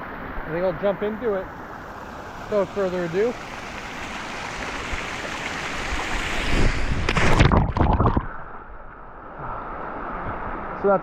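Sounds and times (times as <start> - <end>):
flowing water rushing: 0.0 - 11.0
person splashing into water: 6.6 - 8.4.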